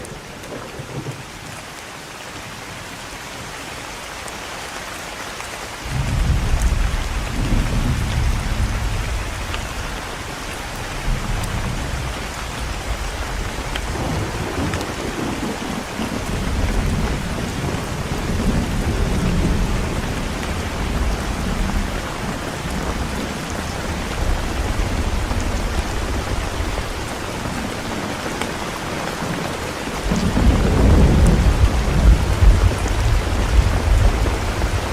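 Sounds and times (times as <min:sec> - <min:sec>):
rain hiss: 0:00.0 - 0:34.9
rolling thunder: 0:05.9 - 0:28.1, 0:30.0 - 0:34.9.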